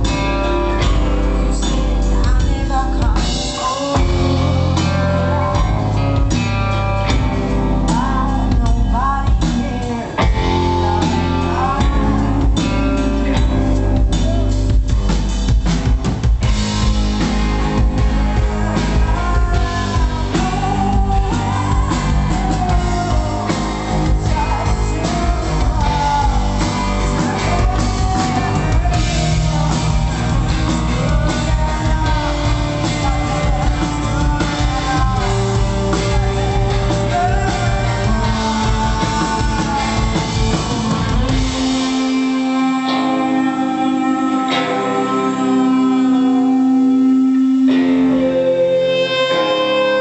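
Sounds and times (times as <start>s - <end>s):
person singing: 0.0s - 15.2s, 16.8s - 50.0s
drums: 0.0s - 50.0s
electric guitar: 0.0s - 50.0s.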